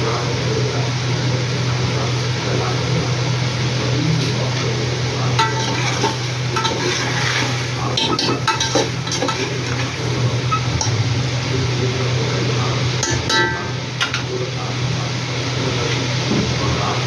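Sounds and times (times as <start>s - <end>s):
food frying in a pot: 0.2s - 17.0s
metal spoon scraping a pot: 5.4s - 10.9s.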